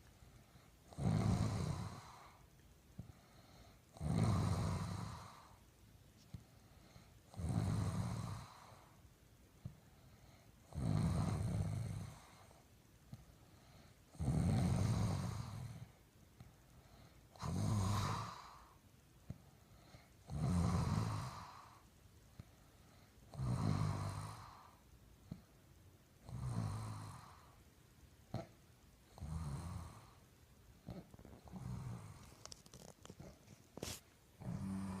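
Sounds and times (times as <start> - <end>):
person snoring: 0.9 - 2.4, 3.9 - 5.6, 7.3 - 9.0, 10.6 - 12.5, 14.1 - 15.9, 17.3 - 18.8, 20.2 - 21.8, 23.3 - 24.8, 26.2 - 27.6, 29.1 - 30.2, 30.8 - 35.0.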